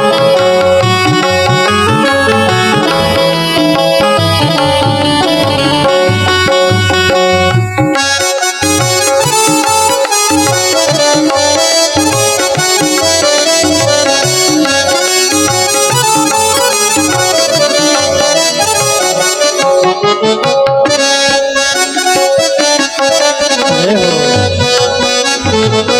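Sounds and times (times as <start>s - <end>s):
sustained reed melody: 0.0s - 7.5s, 15.6s - 20.5s.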